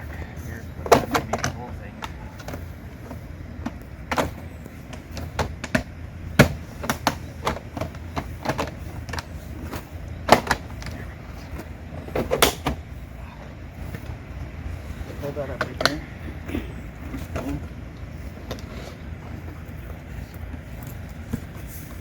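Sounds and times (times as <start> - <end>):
steady low hum: 0.0 - 22.0
siding panel clacking and knocking: 0.8 - 11.0.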